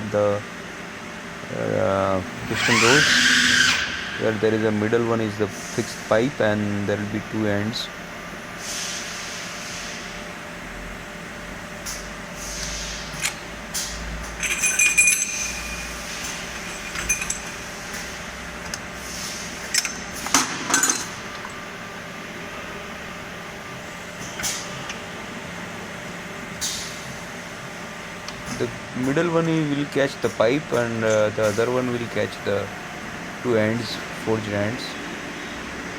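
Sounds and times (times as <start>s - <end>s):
steady machine hum: 0.0s - 35.9s
metallic clinks and knocks: 14.2s - 17.8s.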